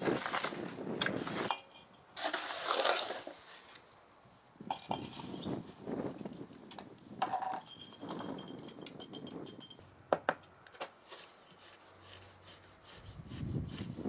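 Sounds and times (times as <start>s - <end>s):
small hard parts clinking: 4.7s - 5.6s, 7.2s - 10.3s.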